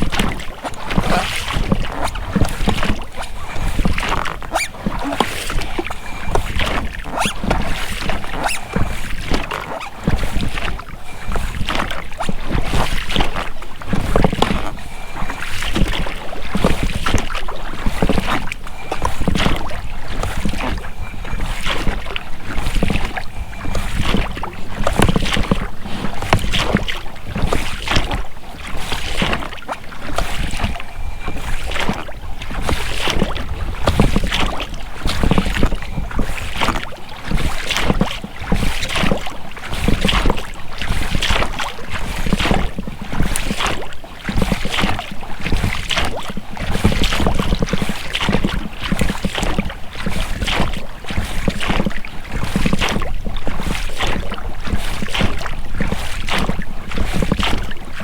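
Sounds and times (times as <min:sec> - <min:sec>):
oars splashing and dripping: 0:00.0 - 0:58.0
rubber rowlocks creaking: 0:00.1 - 0:37.5.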